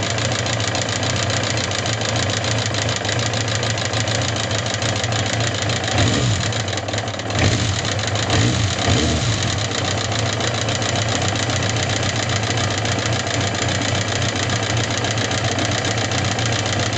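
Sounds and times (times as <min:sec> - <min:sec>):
motorcycle engine idling: 0:00.0 - 0:16.9
engine revving: 0:05.9 - 0:06.6, 0:07.3 - 0:09.8.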